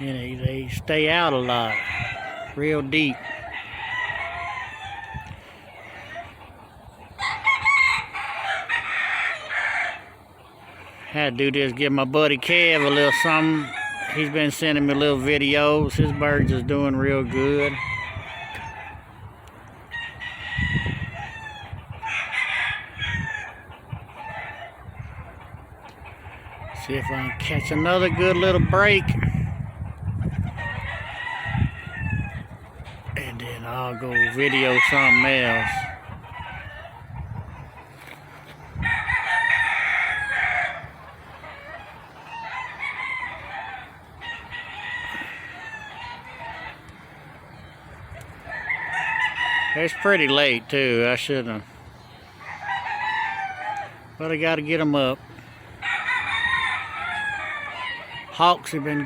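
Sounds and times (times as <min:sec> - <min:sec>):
rooster crowing: 0:01.3 - 0:06.4, 0:07.1 - 0:10.2, 0:12.4 - 0:15.2, 0:17.2 - 0:19.1, 0:19.9 - 0:25.3, 0:30.4 - 0:32.5, 0:33.7 - 0:37.2, 0:38.0 - 0:51.1, 0:52.0 - 0:59.0.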